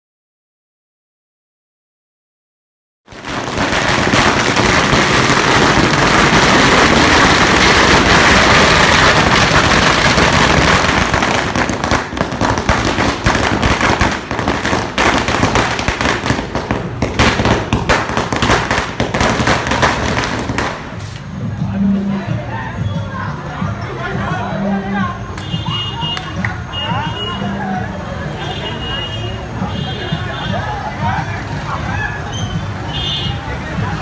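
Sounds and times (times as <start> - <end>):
firecracker crackling and popping: 3.1 - 21.4, 25.3 - 27.5.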